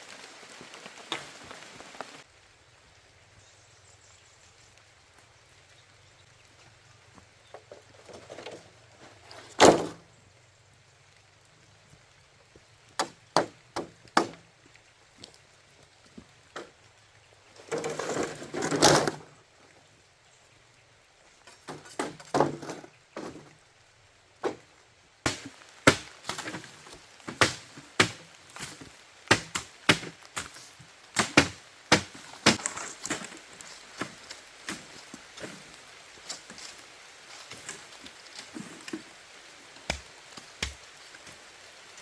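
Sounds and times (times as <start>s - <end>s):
wood splintering crunch: 7.7s - 10.0s, 21.5s - 23.5s, 24.4s - 42.0s
blade chopping wood: 25.3s - 33.4s, 39.8s - 40.9s.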